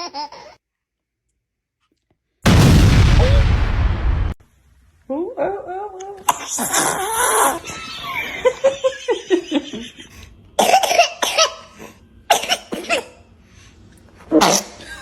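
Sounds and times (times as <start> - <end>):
baby vocal sounds: 6.2 - 7.6
baby sneezing: 6.3 - 7.6, 10.6 - 13.2, 14.3 - 15.0.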